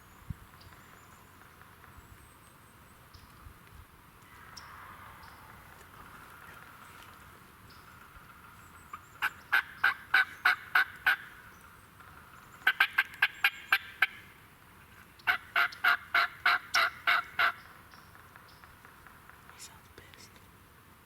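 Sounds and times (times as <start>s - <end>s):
turkey yelping: 9.5s - 11.2s, 15.3s - 17.6s.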